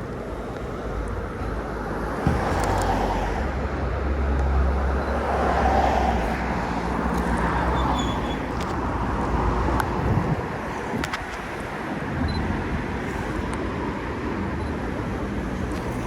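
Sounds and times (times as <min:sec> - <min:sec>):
vehicle engine hum: 0:00.0 - 0:16.0.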